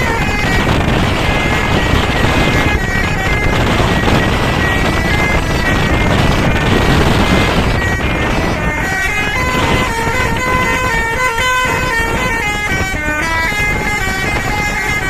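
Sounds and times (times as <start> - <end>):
low bus engine rumble: 0.0 - 15.0
multi-tone bus horn tune: 0.0 - 15.0
rush of noise: 0.0 - 15.0.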